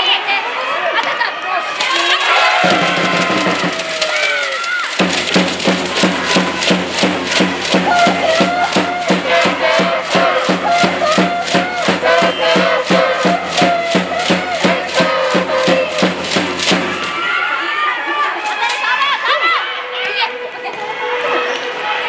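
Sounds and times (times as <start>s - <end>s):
group chanting: 1.8s - 17.3s
drum beating steady rhythm: 1.8s - 17.5s.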